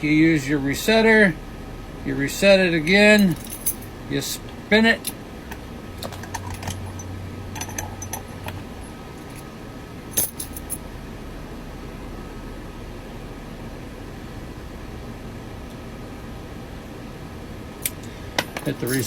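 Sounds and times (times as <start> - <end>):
keys jingling: 3.2 - 3.9, 6.0 - 8.6, 10.1 - 10.8, 18.6 - 19.0.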